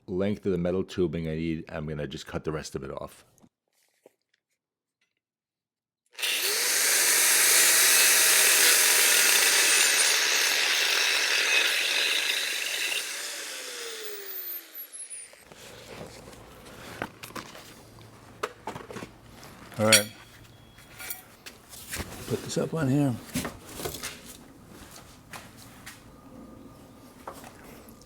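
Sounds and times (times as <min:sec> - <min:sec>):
power tool cutting steel tubing: 0:06.2 - 0:15.5, 0:19.8 - 0:20.2.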